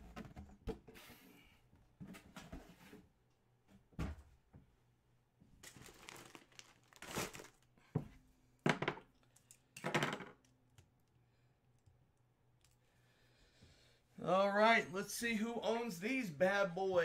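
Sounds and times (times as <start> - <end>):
plastic wrapping crinkling: 5.6 - 7.8.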